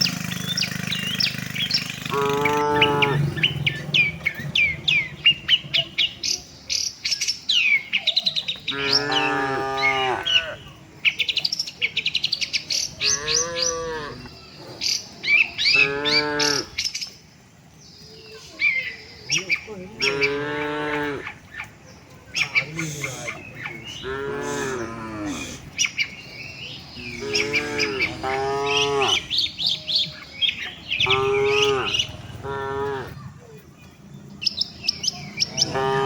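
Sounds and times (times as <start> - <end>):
small birds chirping rapidly: 0.0 - 36.0
cattle mooing: 2.1 - 3.4, 8.7 - 10.6, 13.0 - 14.3, 15.7 - 16.7, 20.0 - 21.2, 23.9 - 25.7, 27.0 - 29.5, 31.0 - 33.3, 35.5 - 36.0.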